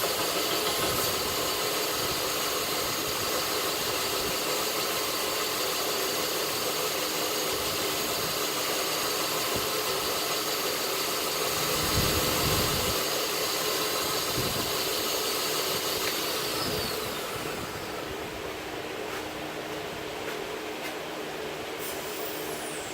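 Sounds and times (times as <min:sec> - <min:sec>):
belt grinder whining: 0:00.0 - 0:18.3, 0:21.8 - 0:22.9.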